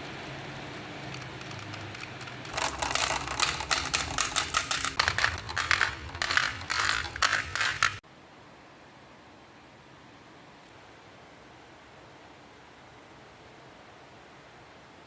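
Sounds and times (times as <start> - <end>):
marbles clattering down a track: 1.1 - 8.0.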